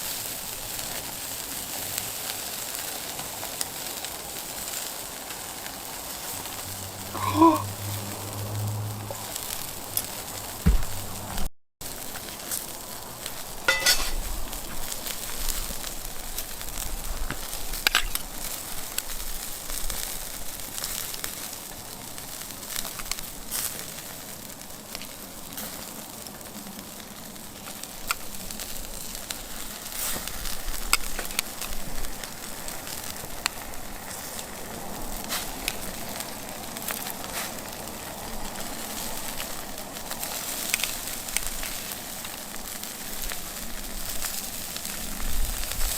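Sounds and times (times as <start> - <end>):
wood fire hissing and crackling: 0.0 - 45.9
sharp pops of fire: 9.1 - 26.7, 27.4 - 45.9.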